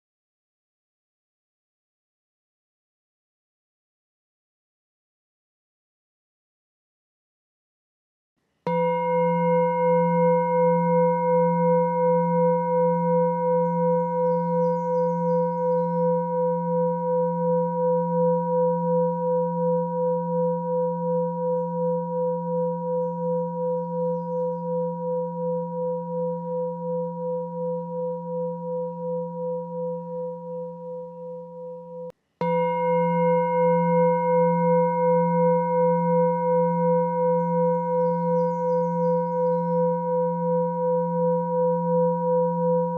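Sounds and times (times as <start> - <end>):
singing bowl ringing: 8.7 - 42.9.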